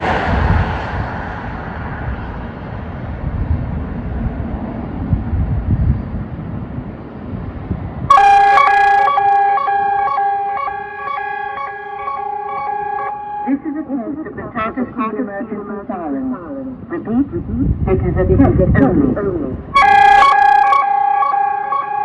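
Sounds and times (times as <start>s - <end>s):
low rumbling background noise: 0.0s - 8.1s, 13.5s - 19.8s
two-tone siren alternating: 8.1s - 14.8s, 19.8s - 22.0s.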